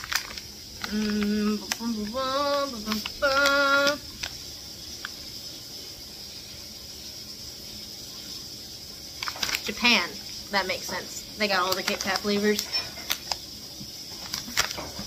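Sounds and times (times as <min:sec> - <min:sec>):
low hiss: 0:00.0 - 0:14.7
woman humming: 0:00.8 - 0:04.0.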